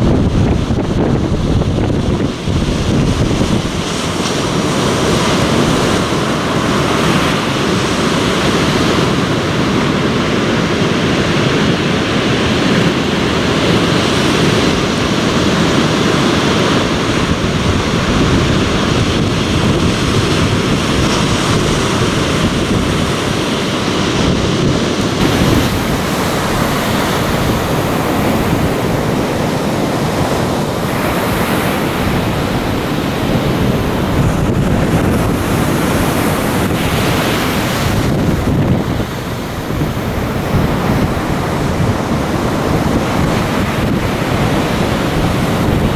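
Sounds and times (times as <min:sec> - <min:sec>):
waves washing on shore: 0:00.0 - 0:45.9
wind buffeting microphone: 0:00.0 - 0:45.9.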